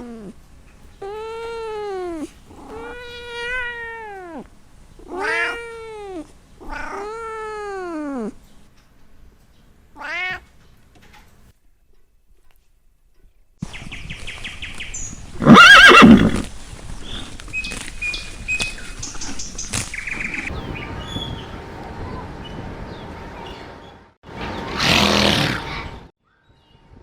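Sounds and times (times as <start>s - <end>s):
horse whinnying: 15.4s - 16.5s.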